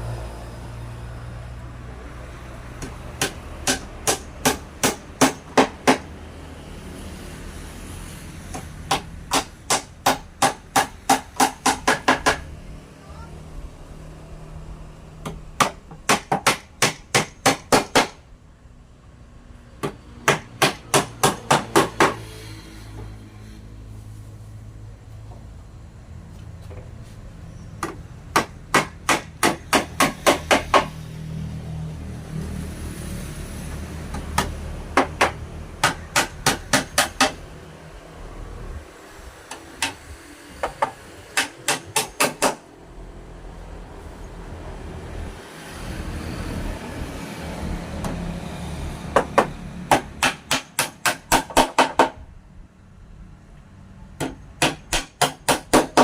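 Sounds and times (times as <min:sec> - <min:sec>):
hammer striking wood: 0:02.8 - 0:06.1, 0:08.5 - 0:12.5, 0:15.2 - 0:18.2, 0:19.8 - 0:22.2, 0:27.8 - 0:31.0, 0:34.1 - 0:37.4, 0:40.6 - 0:42.6, 0:49.1 - 0:52.2, 0:54.2 - 0:56.0.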